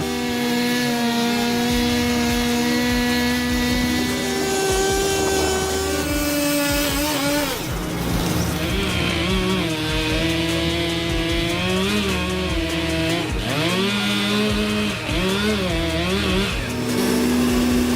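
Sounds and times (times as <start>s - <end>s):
engine running under load: 0.0s - 17.9s.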